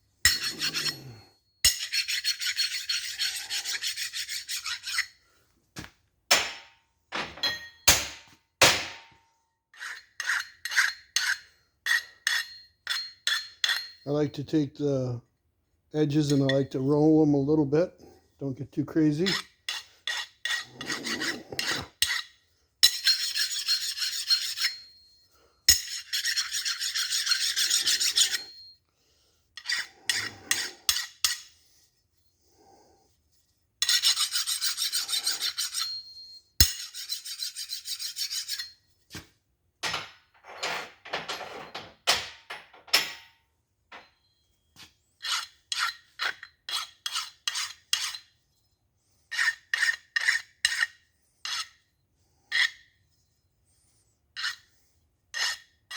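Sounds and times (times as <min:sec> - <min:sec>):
file rasping on steel: 0:00.3 - 0:05.2, 0:09.7 - 0:14.0, 0:19.1 - 0:25.0, 0:25.7 - 0:28.7, 0:29.6 - 0:31.7, 0:33.8 - 0:38.8, 0:45.2 - 0:48.4, 0:49.3 - 0:51.8, 0:54.4 - 0:55.9.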